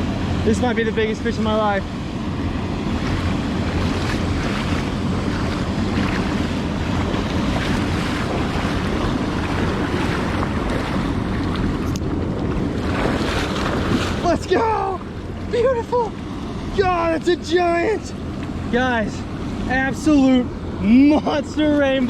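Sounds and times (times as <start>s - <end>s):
wind buffeting microphone: 0.0s - 20.8s
fast-flowing stream water: 2.6s - 17.9s.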